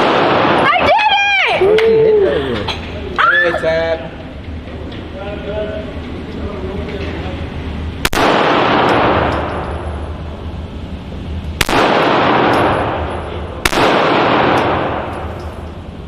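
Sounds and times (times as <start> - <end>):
handgun shots echoing: 8.1 - 9.8, 11.6 - 13.1, 13.7 - 15.4.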